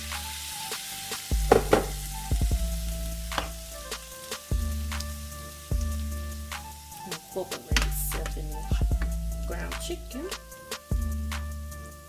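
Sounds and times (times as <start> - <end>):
background music with beat: 0.0 - 12.0
meat sizzling in a pan: 0.0 - 12.0.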